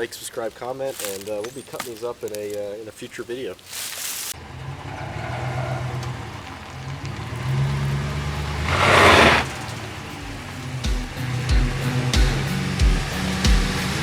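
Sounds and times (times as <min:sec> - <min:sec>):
vehicle engine running: 0:04.4 - 0:14.0.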